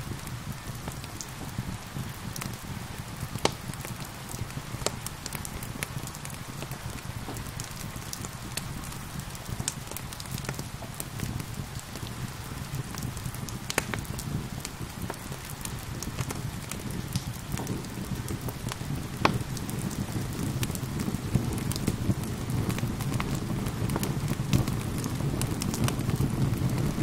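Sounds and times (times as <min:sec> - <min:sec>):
gentle rain hiss: 0:00.0 - 0:27.0
wood fire crackling and popping: 0:00.0 - 0:27.0.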